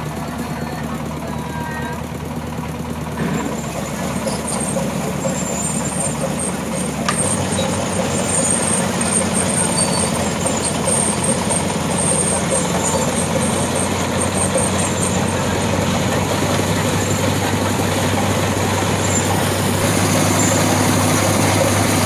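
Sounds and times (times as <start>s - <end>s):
engine running: 0.0s - 22.0s.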